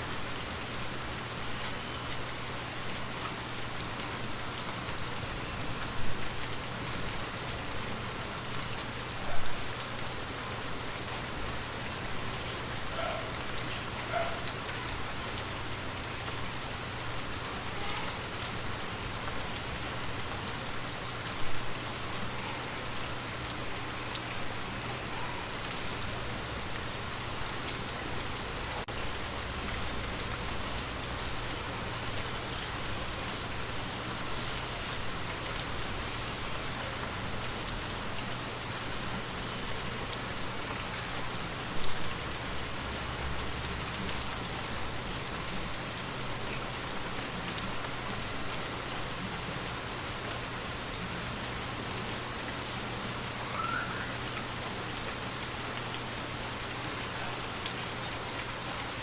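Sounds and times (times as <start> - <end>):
steady rain falling: 0.0 - 59.0
faint chirp: 53.5 - 54.2.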